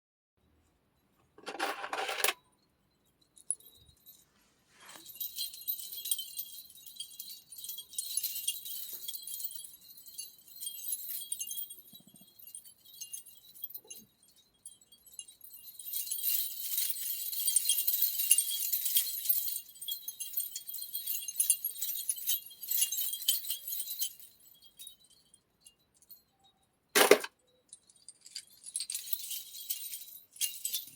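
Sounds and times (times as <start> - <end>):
small metal pieces jingling: 15.6 - 25.3, 25.9 - 30.9.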